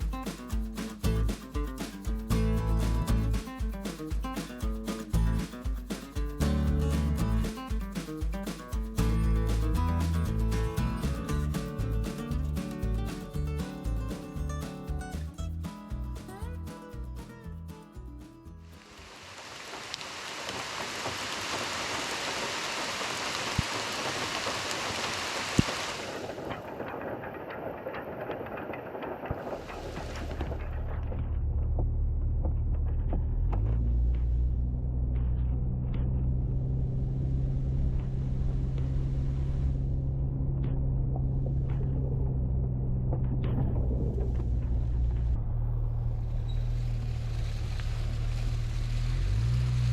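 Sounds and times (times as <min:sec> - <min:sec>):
road rumble: 0:00.0 - 0:49.9
heavy rain hissing: 0:18.8 - 0:30.6, 0:46.6 - 0:49.9
car engine drone: 0:26.1 - 0:49.9.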